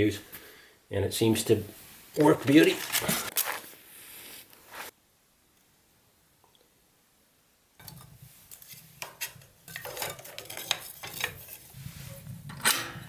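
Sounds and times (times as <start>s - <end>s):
wood fire crackling: 1.6s - 4.9s.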